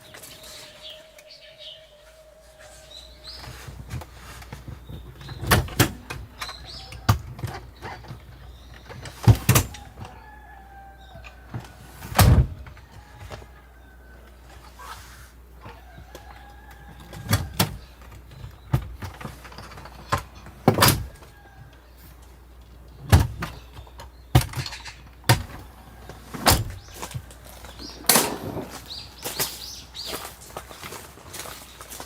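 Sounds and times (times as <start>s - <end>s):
knocks clunks and scrapes: 2.7s - 10.4s, 14.4s - 21.4s, 22.9s - 31.1s.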